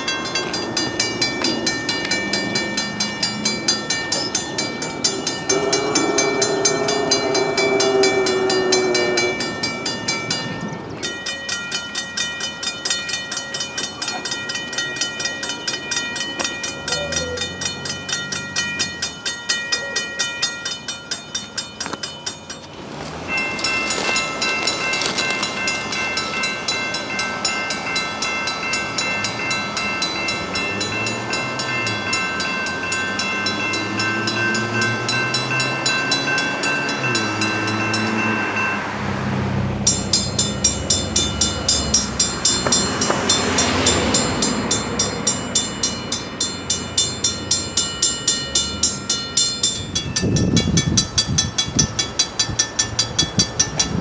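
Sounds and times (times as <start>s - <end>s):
low train rumble: 0.0s - 54.0s
railroad crossing bells ringing: 0.0s - 54.0s
train horn: 5.4s - 9.8s.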